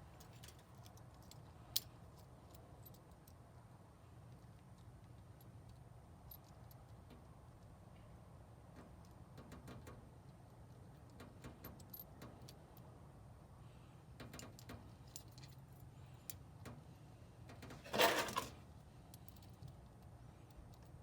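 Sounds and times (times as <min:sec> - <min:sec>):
rattling clatter: 0:17.8 - 0:18.6.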